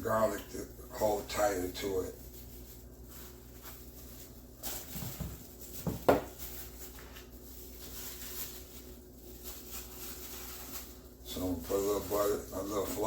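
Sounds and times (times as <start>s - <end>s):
kitchen handling sounds: 4.6s - 8.4s.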